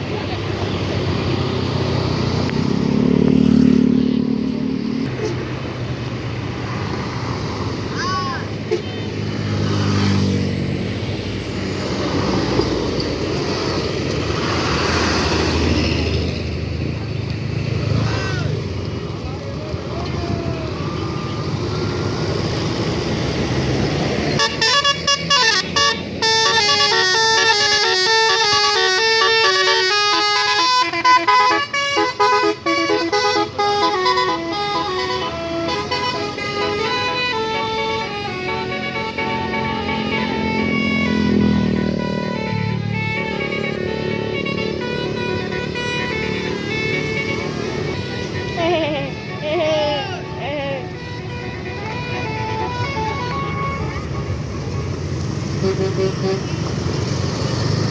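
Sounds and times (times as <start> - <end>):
bus engine and tyre rumble: 0.0 - 57.9
musical air horn melody: 24.3 - 54.6, 55.5 - 56.6.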